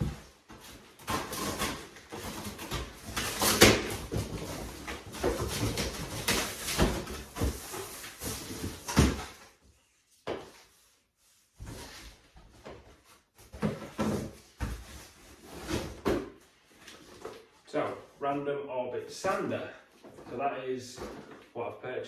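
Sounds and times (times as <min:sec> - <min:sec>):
cardboard boxes rustling and scraping: 0:00.0 - 0:17.6.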